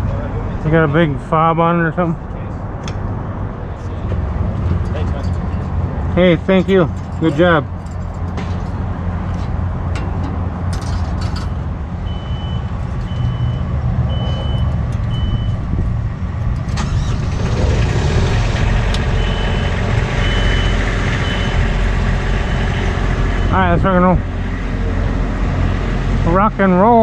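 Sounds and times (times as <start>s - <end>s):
vehicle engine running: 4.2s - 26.4s
reversing alarm beeps: 12.0s - 15.6s, 19.2s - 23.6s.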